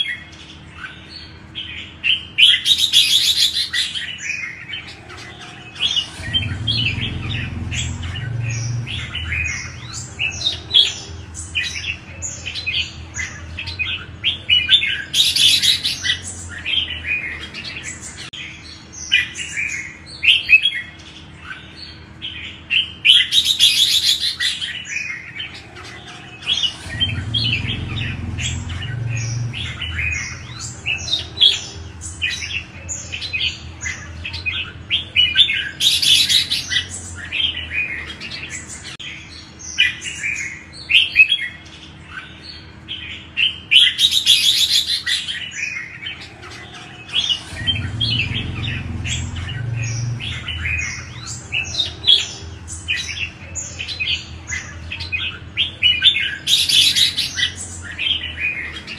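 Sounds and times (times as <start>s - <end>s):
birds singing chirping phrases: 0.0s - 58.9s.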